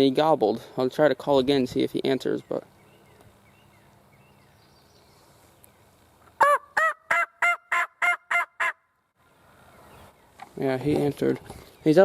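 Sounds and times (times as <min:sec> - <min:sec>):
turkey call yelps: 0:06.4 - 0:08.9.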